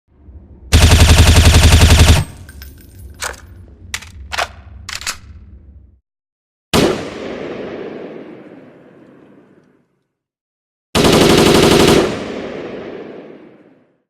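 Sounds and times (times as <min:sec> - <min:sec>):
metallic clinks: 0:02.3 - 0:03.6.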